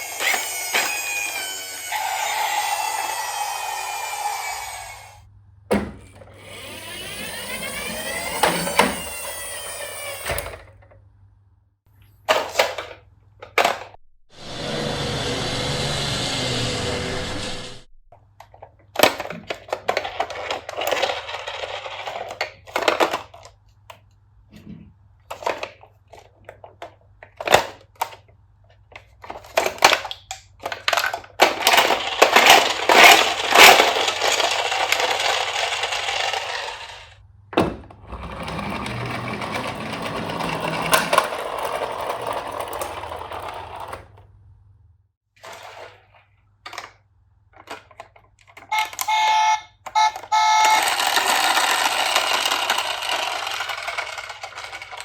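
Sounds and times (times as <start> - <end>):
toy trucks rattling on wood: 0.0 - 4.7, 18.4 - 23.6, 25.3 - 37.2, 38.2 - 44.2, 46.7 - 55.0.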